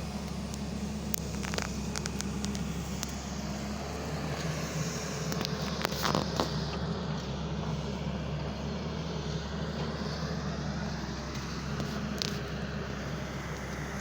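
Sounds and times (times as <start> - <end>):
construction machine engine running: 0.0 - 14.0.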